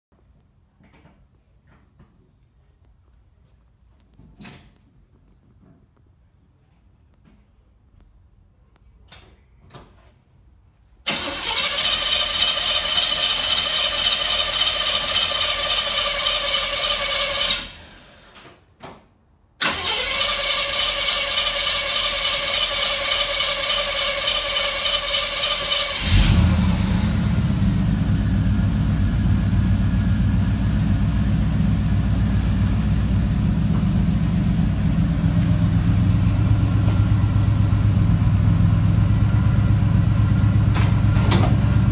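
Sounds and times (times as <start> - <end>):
starter motor cranking: 11.1 - 18.2, 19.6 - 27.0
car engine idling: 20.9 - 41.9.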